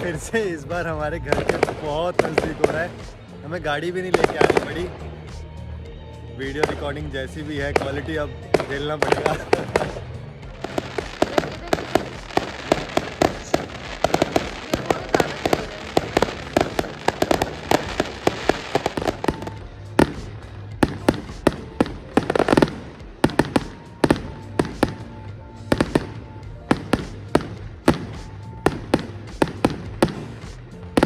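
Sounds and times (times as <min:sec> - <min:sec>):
fireworks crackling and banging: 0:00.0 - 0:05.6, 0:06.3 - 0:31.0
music: 0:00.0 - 0:31.0.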